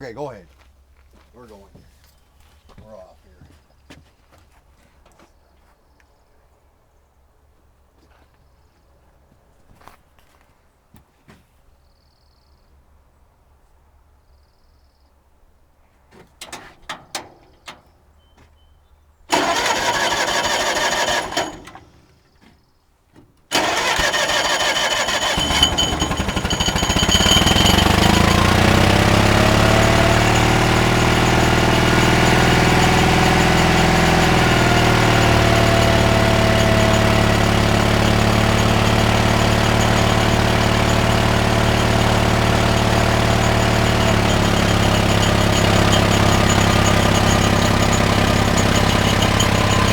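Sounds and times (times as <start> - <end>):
tractor engine starting: 16.4 - 18.0, 19.3 - 22.3, 23.5 - 49.9.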